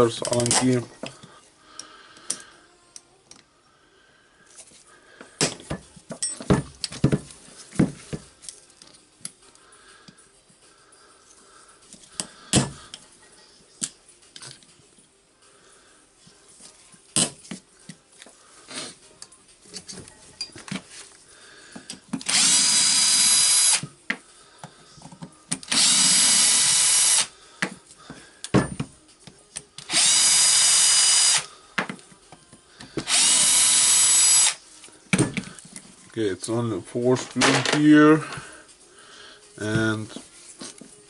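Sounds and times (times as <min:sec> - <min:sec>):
metal parts clicking and knocking: 0:00.2 - 0:01.2
power drill whining: 0:22.2 - 0:23.9, 0:25.7 - 0:27.3, 0:29.9 - 0:31.5, 0:33.0 - 0:34.6.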